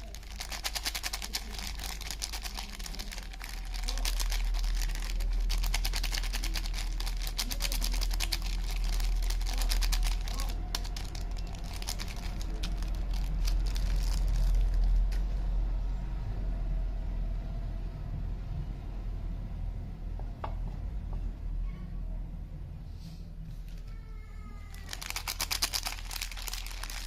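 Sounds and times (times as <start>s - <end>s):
packaging crinkling: 0.0s - 15.2s, 24.7s - 27.0s.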